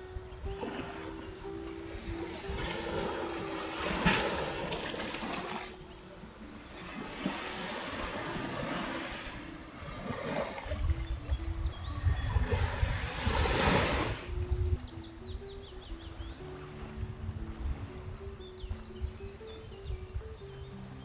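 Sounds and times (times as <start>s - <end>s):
small waves washing on beach: 0.0s - 14.5s.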